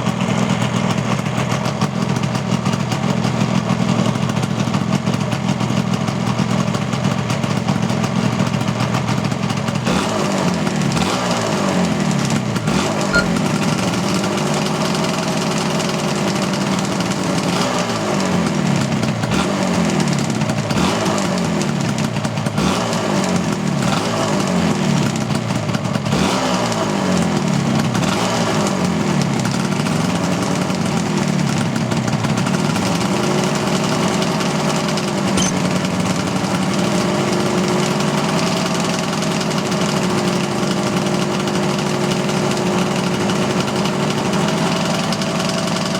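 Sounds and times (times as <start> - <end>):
motorcycle engine revving: 9.7 - 45.9.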